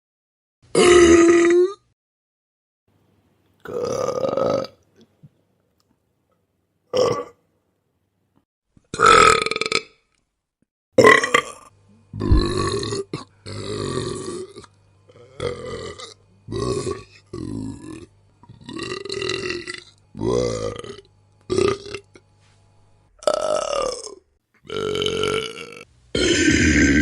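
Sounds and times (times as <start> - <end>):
person burping: 0.7 - 1.9, 3.6 - 4.8, 6.9 - 7.4, 8.9 - 10.0, 11.0 - 14.6, 18.6 - 22.2, 23.2 - 27.0.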